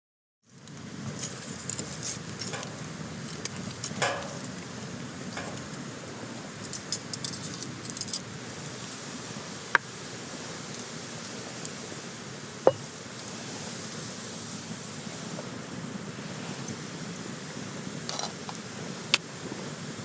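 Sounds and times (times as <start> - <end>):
campfire crackling: 0.5 - 20.0.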